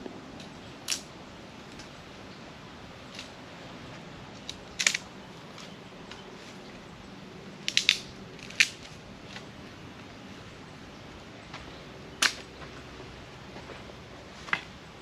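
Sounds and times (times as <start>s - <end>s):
sharp snaps: 4.4s - 5.1s, 7.6s - 9.0s, 12.2s - 12.5s.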